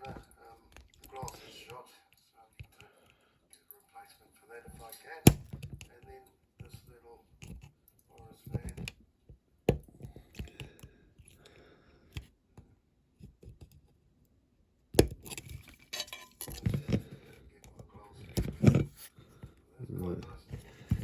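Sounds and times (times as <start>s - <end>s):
clicks and knocks of model handled: 5.3s - 6.0s, 7.4s - 11.5s, 12.1s - 14.0s, 14.9s - 19.5s.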